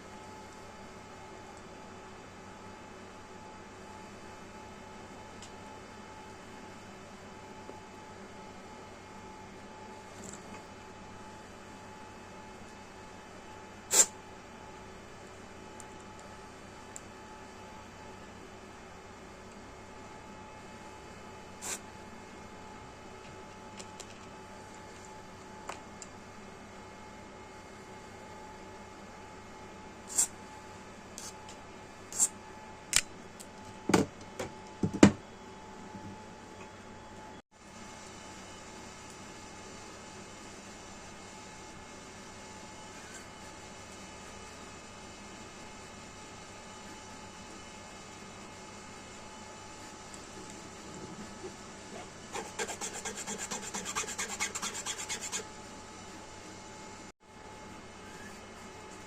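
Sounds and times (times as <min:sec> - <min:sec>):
steady background hum: 0:00.0 - 0:59.0
fast rhythmic rasping strokes: 0:52.3 - 0:55.4.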